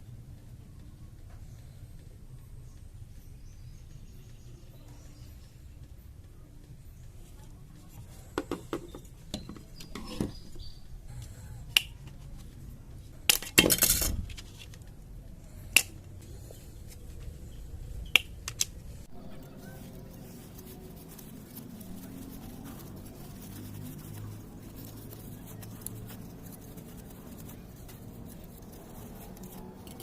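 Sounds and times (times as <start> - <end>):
plastic parts clicking and clinking: 13.2 - 14.9
plastic parts rattling: 13.3 - 14.8.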